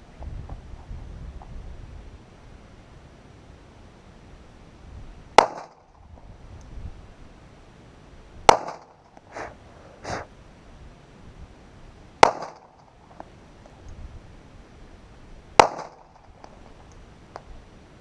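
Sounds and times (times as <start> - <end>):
pistol shots: 5.4 - 6.0, 8.5 - 9.1, 12.2 - 12.9, 15.6 - 16.3.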